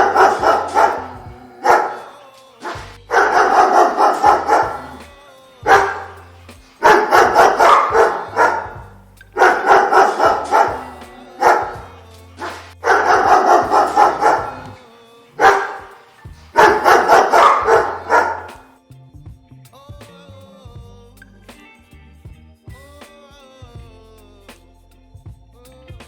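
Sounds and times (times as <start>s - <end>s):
dogs barking: 0.0s - 14.8s, 15.4s - 18.8s.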